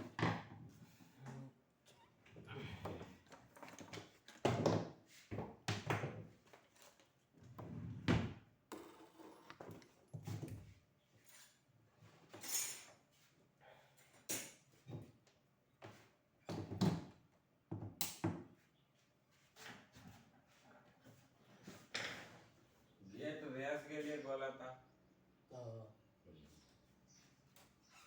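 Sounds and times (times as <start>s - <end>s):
tools clattering on workbench: 12.3s - 13.0s.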